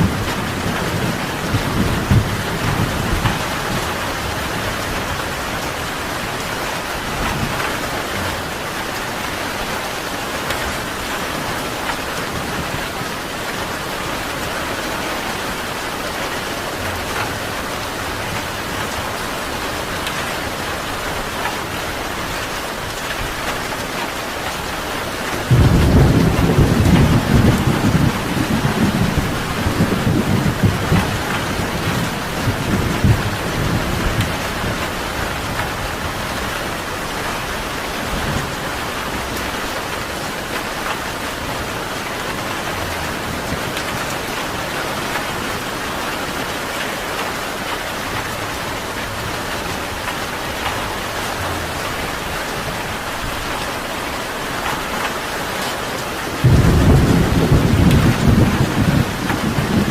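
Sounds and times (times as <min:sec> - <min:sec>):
low thunder rumbling: 0:00.0 - 0:09.0, 0:24.6 - 0:54.7, 0:56.4 - 0:59.9
steady rain hiss: 0:00.0 - 0:59.9.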